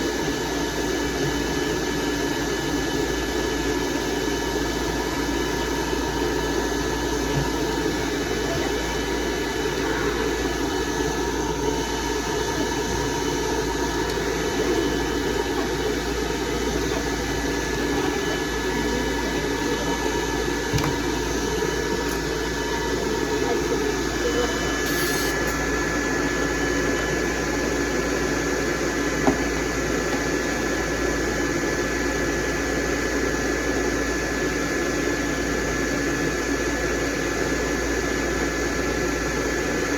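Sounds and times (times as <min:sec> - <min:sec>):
dryer blowing air: 0:00.0 - 0:39.9
faint steady whine: 0:00.0 - 0:39.9.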